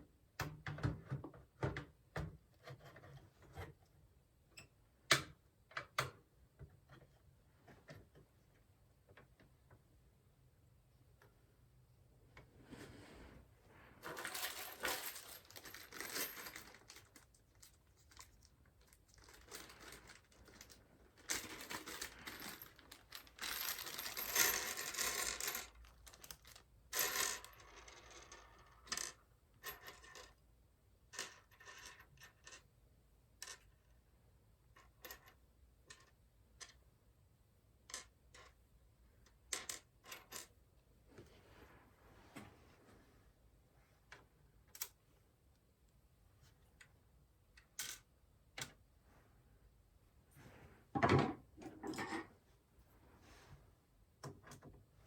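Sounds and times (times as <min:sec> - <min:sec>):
rustling and scraping handling noise: 0:12.3 - 0:27.3, 0:41.0 - 0:44.3, 0:50.3 - 0:55.0.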